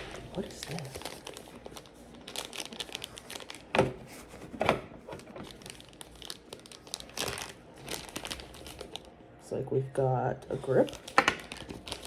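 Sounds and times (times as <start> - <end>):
packaging crinkling and rustling: 0.0 - 9.2, 10.5 - 12.0.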